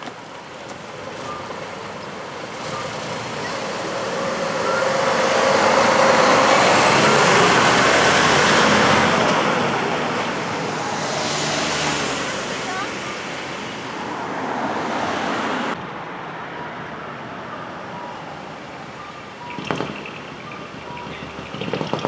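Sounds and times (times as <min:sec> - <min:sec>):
heavy truck driving past: 0:00.4 - 0:15.8.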